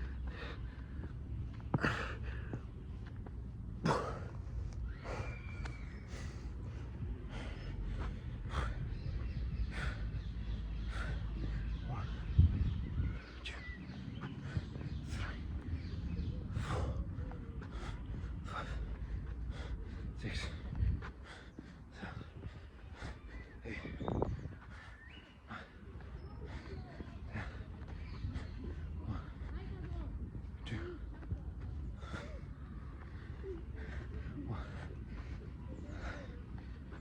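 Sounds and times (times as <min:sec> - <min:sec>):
man breathing hard: 0:00.0 - 0:02.7, 0:06.1 - 0:12.2, 0:16.5 - 0:26.7.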